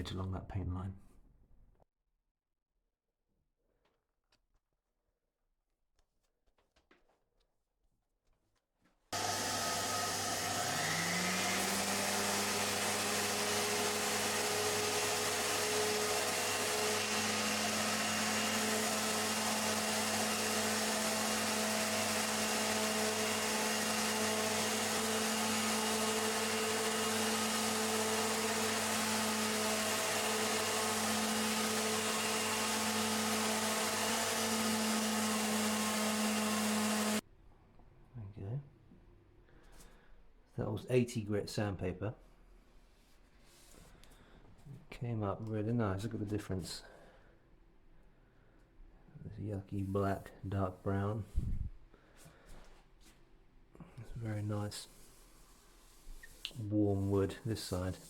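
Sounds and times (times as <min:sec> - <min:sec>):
orbital sander on wood: 0:09.2 - 0:37.2, 0:56.2 - 0:58.0.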